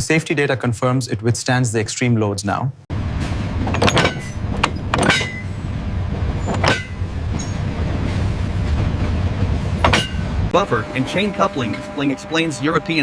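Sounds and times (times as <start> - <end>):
steady low rumble: 2.9 - 13.0.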